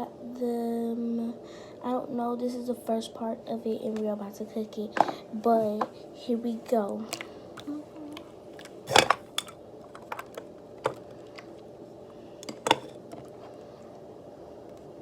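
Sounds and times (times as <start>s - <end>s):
faint steady hum: 0.0s - 15.0s
small objects clicking and tapping: 8.6s - 11.6s, 12.4s - 13.4s.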